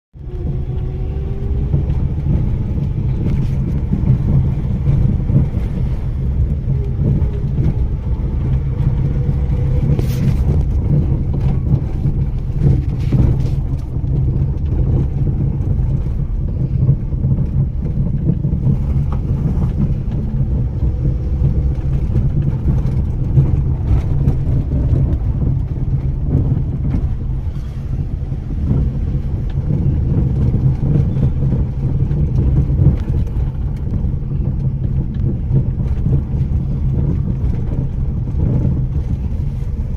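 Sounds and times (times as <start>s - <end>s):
car engine low rumble: 0.1s - 39.9s.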